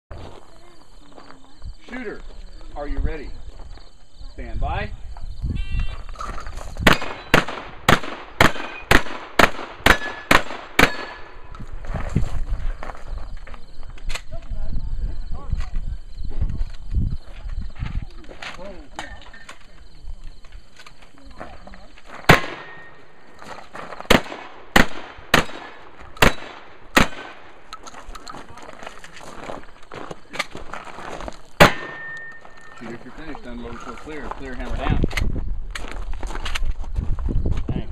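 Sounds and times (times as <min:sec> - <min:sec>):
shotgun shots: 0:06.8 - 0:11.5, 0:22.2 - 0:23.0, 0:24.1 - 0:27.6, 0:31.6 - 0:32.4.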